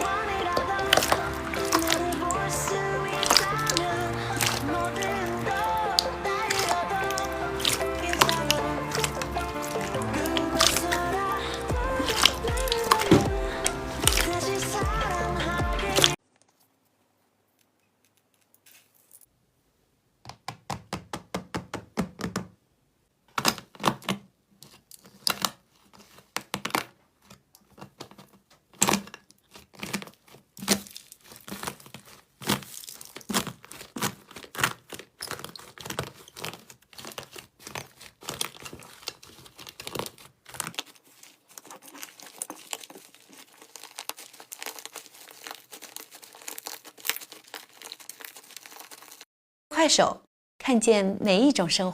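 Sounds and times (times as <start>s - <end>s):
slime crackling and popping: 0.0s - 15.2s, 27.5s - 49.3s.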